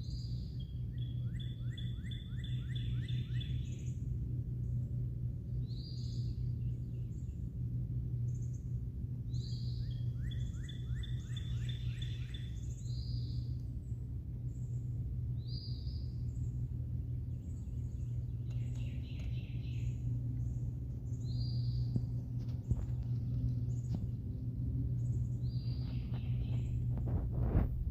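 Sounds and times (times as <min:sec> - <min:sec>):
bird trill: 0:00.0 - 0:04.0, 0:09.3 - 0:13.6, 0:17.3 - 0:22.1
birds chirping: 0:00.0 - 0:27.0
steady low rumble: 0:00.0 - 0:27.9.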